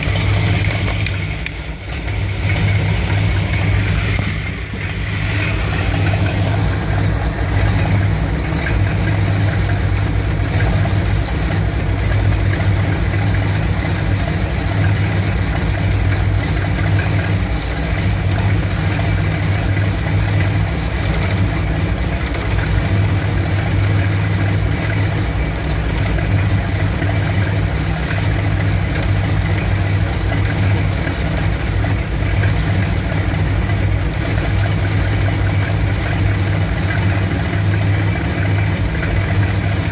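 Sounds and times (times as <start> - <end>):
van engine idling roughly: 0.0 - 39.9.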